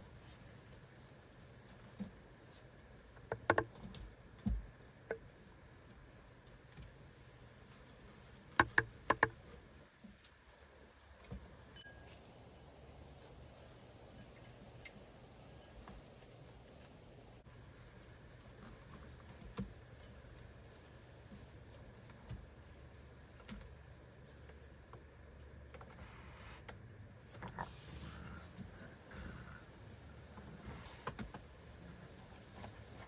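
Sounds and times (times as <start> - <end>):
faint steady background: 0.0 - 33.0
raccoons feeding clicks and taps: 0.6 - 5.2, 8.1 - 10.4, 12.1 - 26.0.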